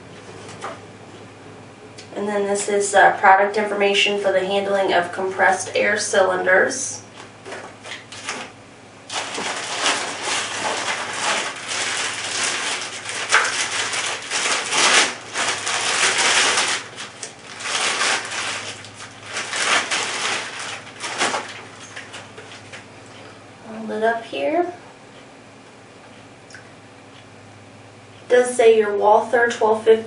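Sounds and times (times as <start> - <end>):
packaging rustling and crinkling: 7.2 - 8.5, 9.1 - 22.8.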